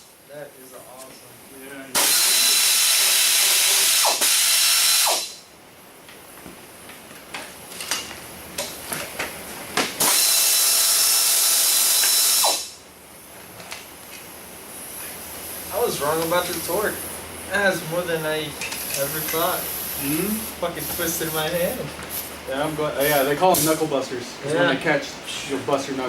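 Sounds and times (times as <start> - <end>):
power ratchet spinning bolts: 2.0 - 5.4, 10.0 - 12.8.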